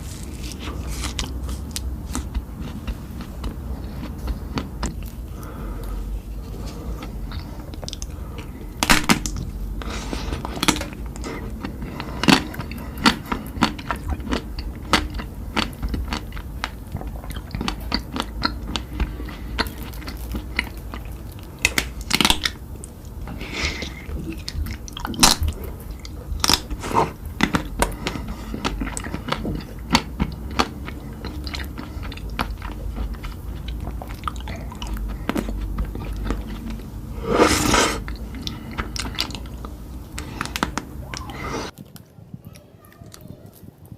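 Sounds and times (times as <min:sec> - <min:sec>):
person chewing crunchy food: 0:00.0 - 0:42.2
wet mouth sounds: 0:06.9 - 0:41.9.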